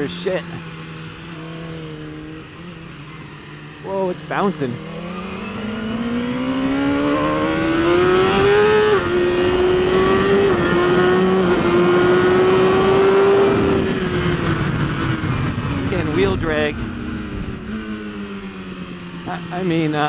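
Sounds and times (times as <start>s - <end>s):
motorcycle engine revving: 0.0s - 20.0s.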